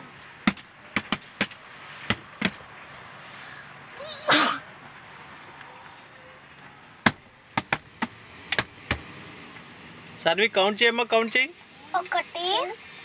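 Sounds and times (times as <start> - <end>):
child pretend sneezing: 4.0 - 4.7.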